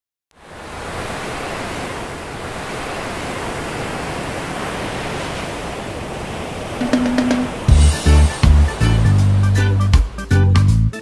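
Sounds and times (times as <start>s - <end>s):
steady rushing noise: 1.9s - 10.3s.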